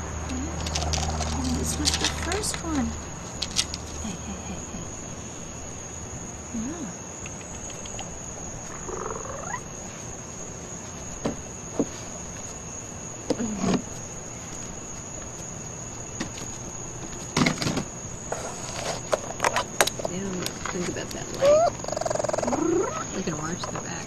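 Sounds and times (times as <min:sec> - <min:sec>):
cricket trill: 0:00.0 - 0:24.0
baby raccoons squealing: 0:07.6 - 0:09.8, 0:21.3 - 0:23.6.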